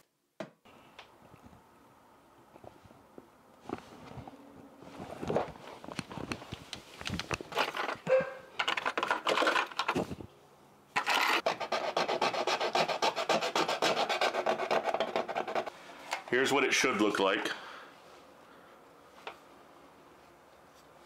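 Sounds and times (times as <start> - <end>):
filing hard plastic: 11.0 - 15.7.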